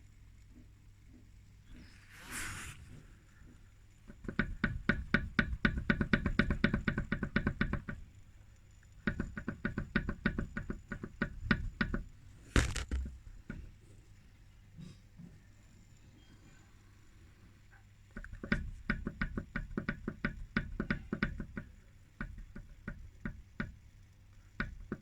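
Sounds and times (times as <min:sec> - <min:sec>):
cv joint clacking: 0:03.4 - 0:13.8, 0:18.0 - 0:25.0.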